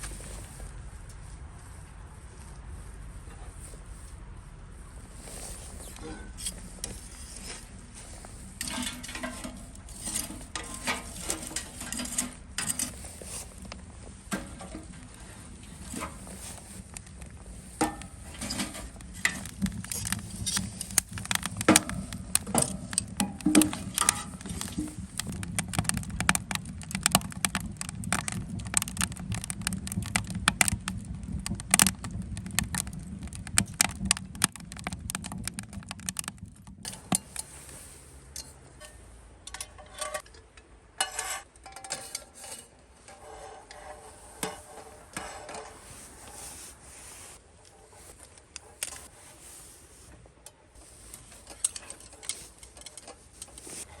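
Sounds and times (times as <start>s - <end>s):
hard objects clicking and clinking: 13.6s - 37.5s.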